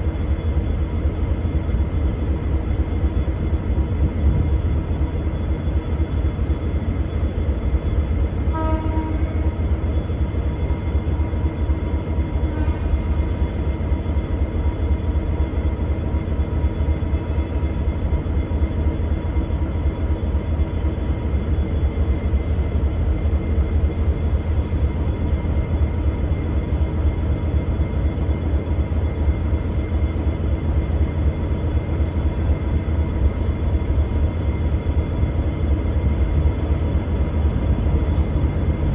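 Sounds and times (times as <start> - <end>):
diesel railcar engine rumble: 0.0 - 38.9
train horn: 8.5 - 9.8, 12.2 - 13.4.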